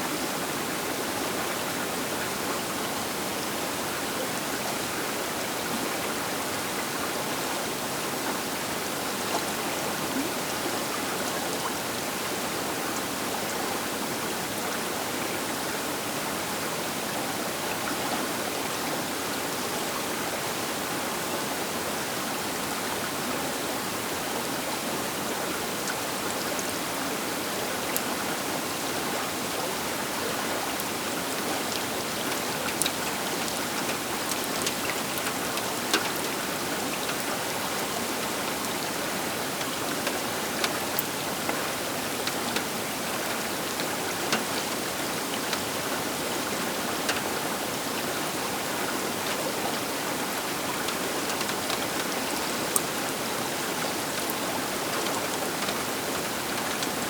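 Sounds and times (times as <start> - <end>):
river water rushing: 0.0 - 57.0
small water splashes: 26.0 - 48.4.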